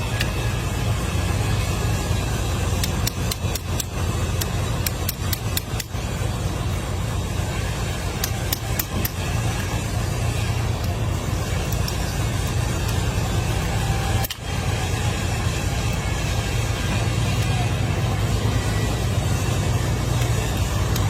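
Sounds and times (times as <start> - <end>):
machine engine humming: 0.0 - 21.0
sharp clicks: 2.7 - 6.0, 8.1 - 9.8, 11.6 - 13.0, 14.0 - 14.5, 20.1 - 21.0.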